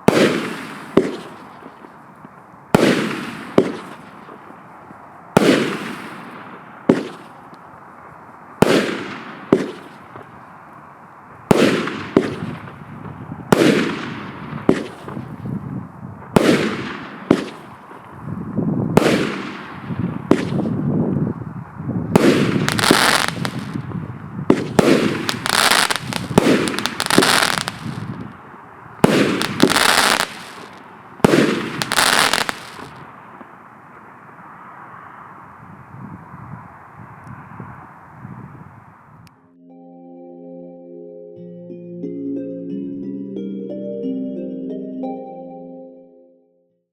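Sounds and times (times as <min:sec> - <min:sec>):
fireworks firing with sharp bangs: 0:00.0 - 0:04.7, 0:05.3 - 0:07.5, 0:08.6 - 0:10.5, 0:11.5 - 0:15.5, 0:16.2 - 0:18.2, 0:19.0 - 0:20.8, 0:22.1 - 0:28.2, 0:29.0 - 0:33.6
firework crackling: 0:22.2 - 0:23.8, 0:24.5 - 0:28.1, 0:29.0 - 0:33.5.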